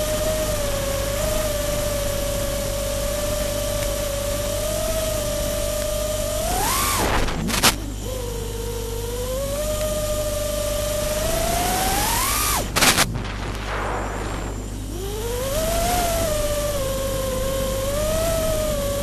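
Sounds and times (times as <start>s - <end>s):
loud noise burst: 0.0s - 8.4s, 10.6s - 19.0s
drone motors whining: 0.0s - 19.0s.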